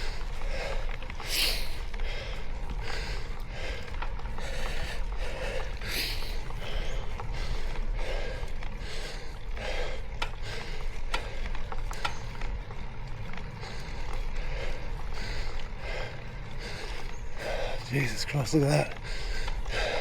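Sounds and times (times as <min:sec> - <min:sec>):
heavy rhythmic breathing: 0:00.0 - 0:20.0
steady low rumble: 0:00.0 - 0:20.0.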